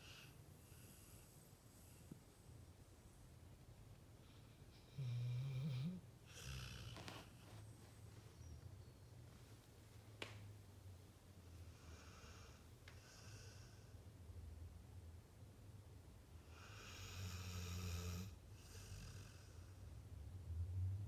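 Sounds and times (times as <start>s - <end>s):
dog snoring: 4.7s - 7.4s, 16.5s - 19.8s.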